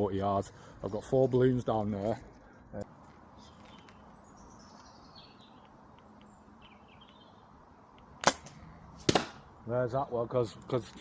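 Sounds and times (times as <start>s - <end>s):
songbird singing high notes: 3.4s - 7.7s
bow loosing arrow crack: 8.2s - 9.4s.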